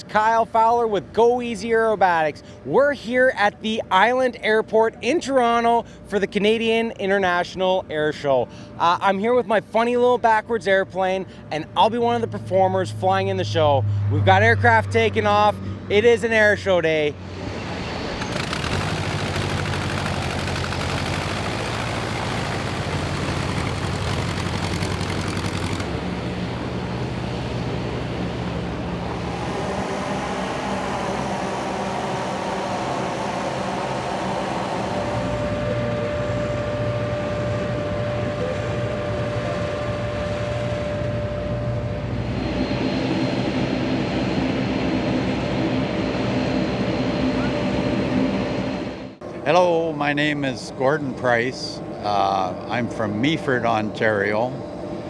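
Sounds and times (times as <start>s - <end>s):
aircraft engines running: 13.8s - 55.0s.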